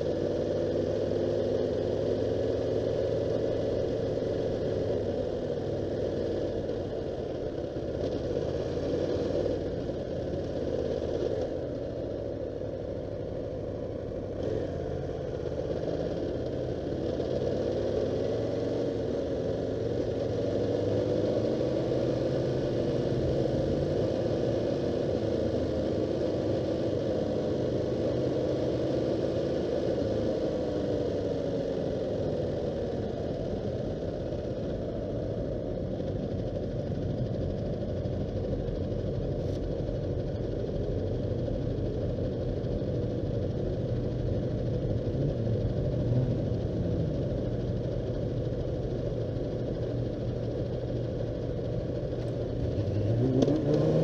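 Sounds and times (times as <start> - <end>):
vehicle engine revving: 44.0 - 50.6, 51.2 - 54.0.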